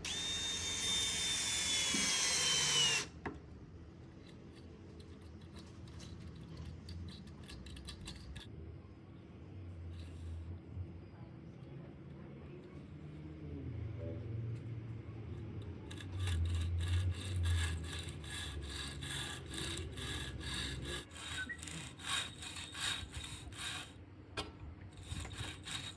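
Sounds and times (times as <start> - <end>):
hand scraping or sawing: 0.0 - 3.1, 15.9 - 24.0, 25.0 - 25.9.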